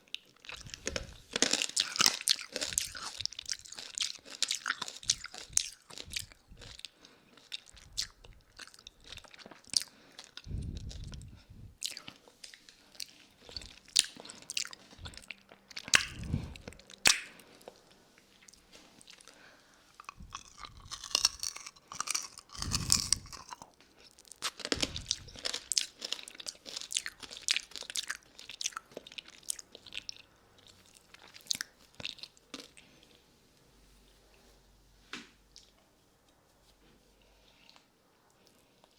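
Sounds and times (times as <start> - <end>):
lollipop sucking and licking: 10.4 - 17.4, 20.0 - 23.6.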